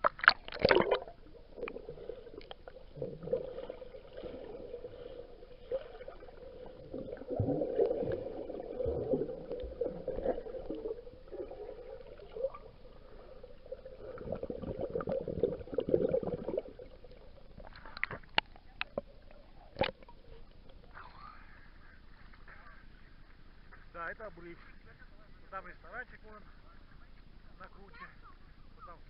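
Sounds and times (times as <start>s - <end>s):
water sloshing and gurgling: 0.0s - 21.0s.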